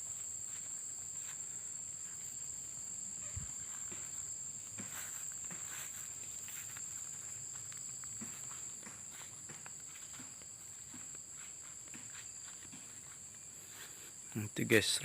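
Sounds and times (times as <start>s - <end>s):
footsteps through brush: 0.0s - 14.2s
crickets droning: 0.0s - 15.0s.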